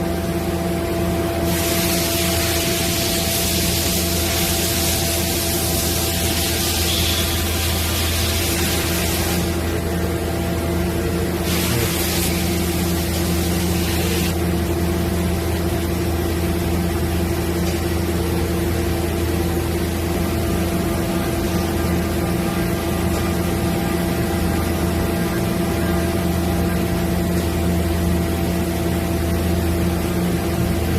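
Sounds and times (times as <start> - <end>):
machining center mechanical hum: 0.0 - 30.9
burst of hiss: 1.5 - 9.5, 11.4 - 14.3.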